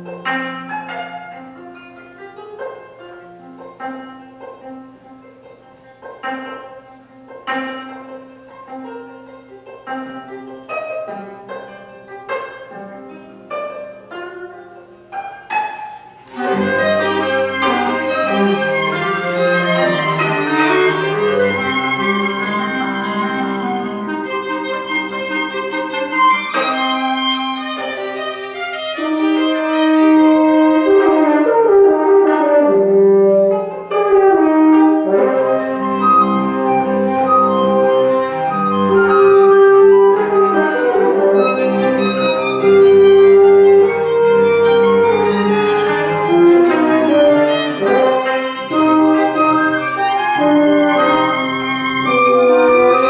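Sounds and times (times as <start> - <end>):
plucked string notes: 0.0 - 53.0.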